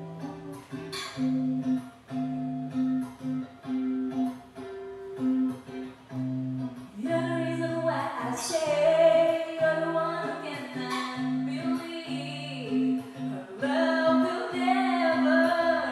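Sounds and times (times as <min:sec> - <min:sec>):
guitar karaoke accompaniment: 0:00.0 - 0:15.9
woman singing: 0:06.9 - 0:15.9.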